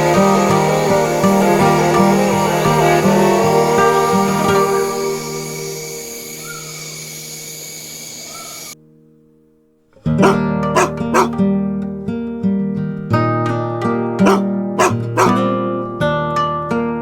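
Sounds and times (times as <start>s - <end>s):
acoustic guitar music: 0.0s - 17.0s
dog barking: 10.2s - 11.4s, 14.2s - 15.4s.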